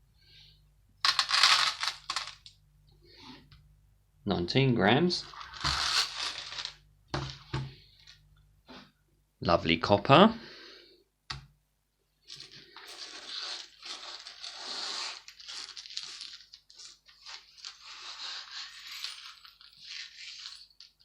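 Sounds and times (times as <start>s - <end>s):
copper scrap rustling and clinking: 5.2s - 7.5s, 12.3s - 21.0s.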